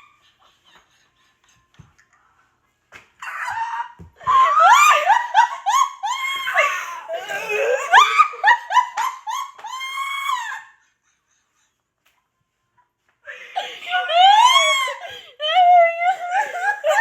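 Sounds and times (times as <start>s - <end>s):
girl laughing with squeals: 3.2s - 10.9s, 13.8s - 17.0s.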